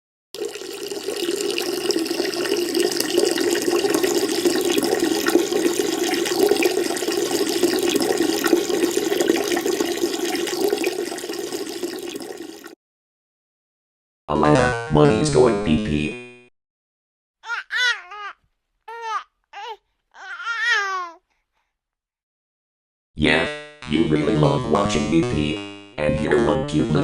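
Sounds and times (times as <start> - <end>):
liquid stream splashing into toilet: 0.4 - 12.8.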